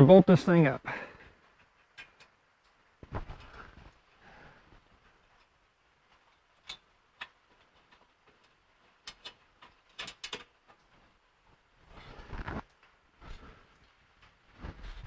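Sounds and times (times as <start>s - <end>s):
sharp clicks of bolts: 6.6s - 10.9s.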